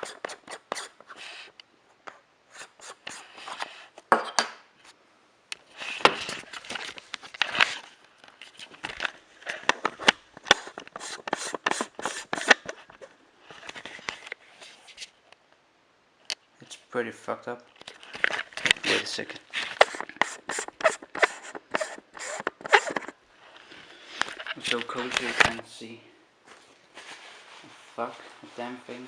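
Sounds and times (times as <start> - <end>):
camera lens clicking and scraping: 5.9 - 15.1, 17.8 - 23.2, 24.2 - 25.6.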